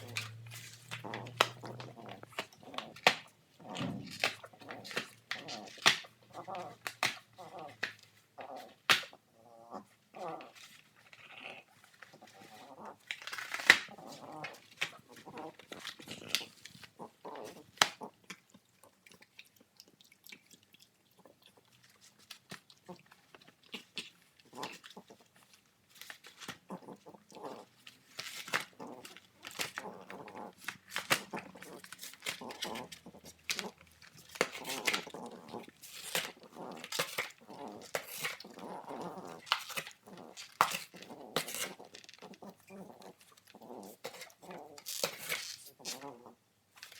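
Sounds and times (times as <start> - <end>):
dog grunting: 0.0 - 6.8, 28.6 - 44.9
dog chewing and ripping cardboard: 0.0 - 18.7, 21.7 - 46.9
puppy vocal noises: 0.0 - 46.9.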